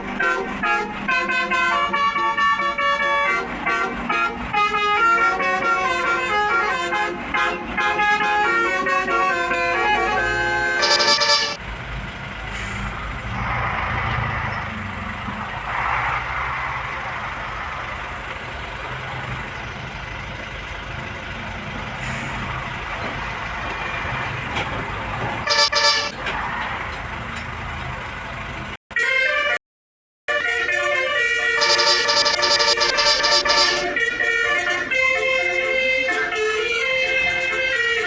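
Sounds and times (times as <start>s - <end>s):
bus engine: 0.0s - 28.8s, 30.4s - 38.0s
traffic noise: 0.0s - 28.8s, 30.4s - 38.0s
multi-tone bus horn blasts: 0.1s - 11.6s, 25.4s - 26.3s, 30.3s - 38.0s.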